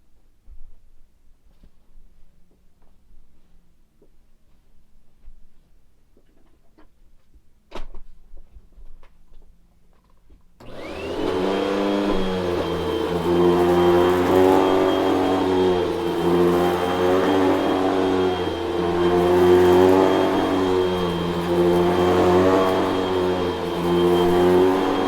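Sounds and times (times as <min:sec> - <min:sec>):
vacuum cleaner motor whining: 0:10.6 - 0:25.0.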